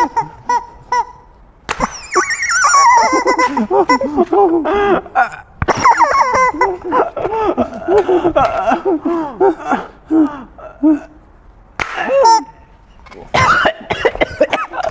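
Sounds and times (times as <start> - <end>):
people laughing and squealing: 1.8 - 10.3.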